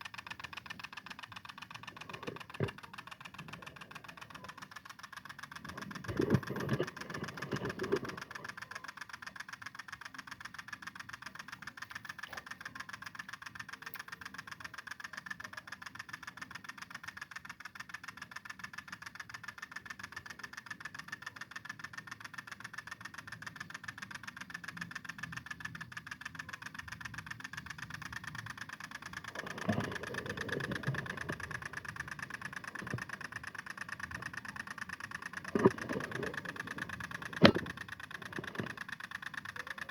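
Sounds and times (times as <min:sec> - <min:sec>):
small two-stroke engine running: 0:00.0 - 0:39.9.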